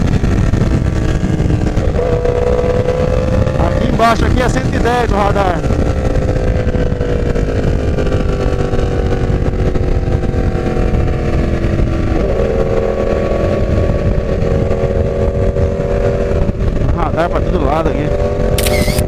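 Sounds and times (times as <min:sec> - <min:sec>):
heavy wind noise: 0:00.0 - 0:19.0
motorcycle engine: 0:00.0 - 0:19.0.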